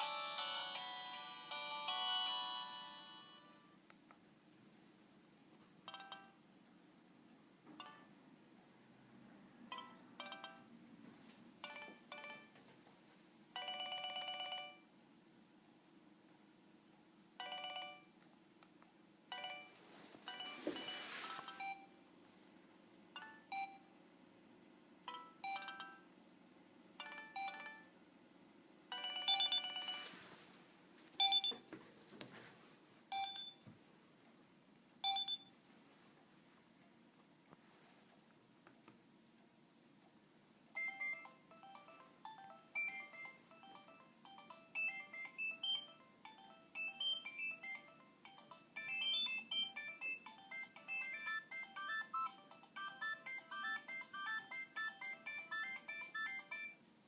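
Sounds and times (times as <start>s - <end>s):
phone ringtone melodies: 0.0s - 3.8s, 9.7s - 10.7s, 11.6s - 12.6s, 13.6s - 14.8s, 17.4s - 18.1s, 19.3s - 21.9s, 25.1s - 26.0s, 27.0s - 27.9s, 28.9s - 30.2s, 40.8s - 56.8s
rustling handling noise: 19.7s - 21.7s, 29.6s - 32.8s.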